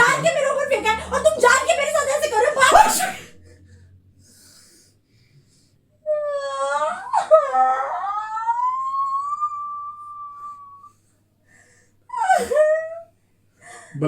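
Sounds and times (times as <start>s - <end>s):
person sneezing with a wail: 2.7s - 3.3s.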